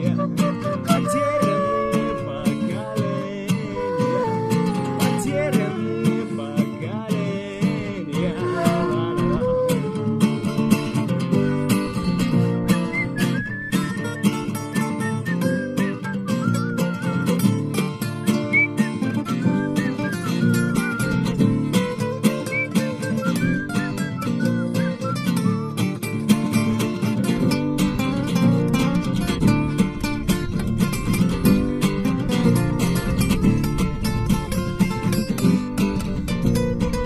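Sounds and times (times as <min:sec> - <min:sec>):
high wavering melody: 0:00.0 - 0:06.6
sliding melody line: 0:00.0 - 0:25.6
guitar: 0:00.0 - 0:37.0.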